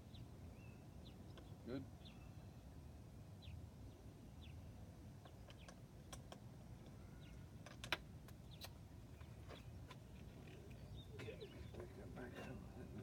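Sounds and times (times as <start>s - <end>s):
bird chirps: 10.4s - 11.9s.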